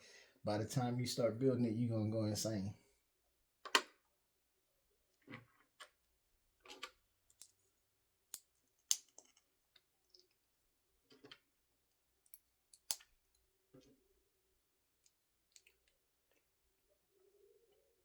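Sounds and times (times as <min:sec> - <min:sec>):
plastic bricks snapping together: 0:08.3 - 0:09.2.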